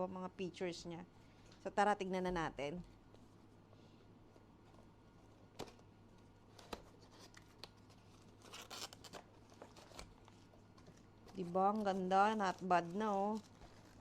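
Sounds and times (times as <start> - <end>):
packaging tearing and rustling: 6.5 - 14.0.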